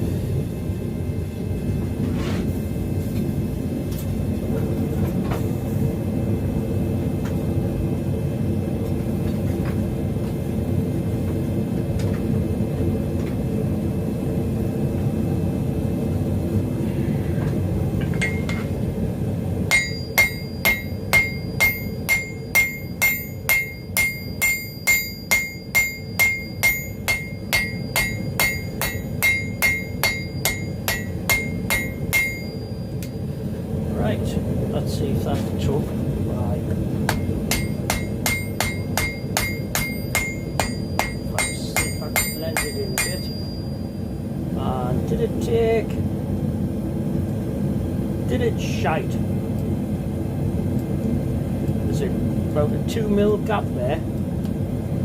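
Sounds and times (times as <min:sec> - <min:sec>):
gas forge burner rumbling: 0:00.0 - 0:55.0
hammer ringing on anvil: 0:18.2 - 0:18.7, 0:19.7 - 0:33.3, 0:37.1 - 0:44.1.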